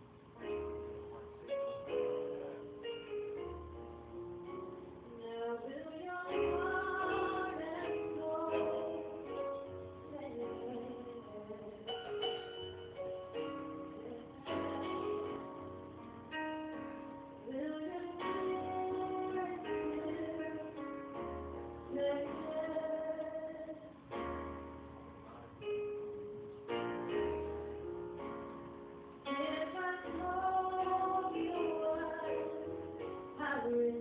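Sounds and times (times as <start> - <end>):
woman singing: 5.0 - 12.2, 13.4 - 15.5, 17.4 - 24.0, 29.3 - 34.0.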